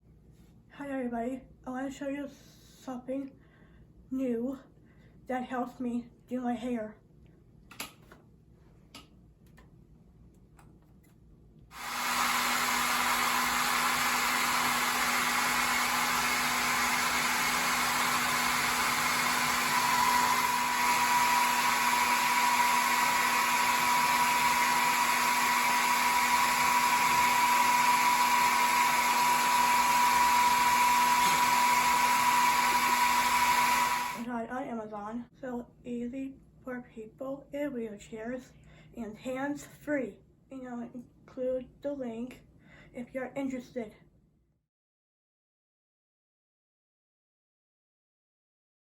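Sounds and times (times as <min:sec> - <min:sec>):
hair dryer running: 0:11.7 - 0:34.3.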